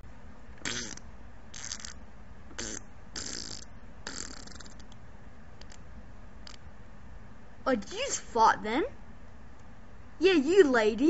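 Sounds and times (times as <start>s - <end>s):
cartoon fart sound effects: 0.6s - 4.8s.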